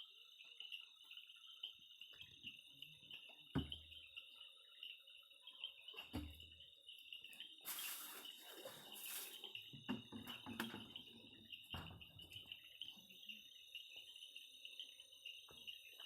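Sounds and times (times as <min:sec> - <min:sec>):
insect chorus trilling: 0:00.0 - 0:16.0
hissing rustle: 0:07.6 - 0:09.6.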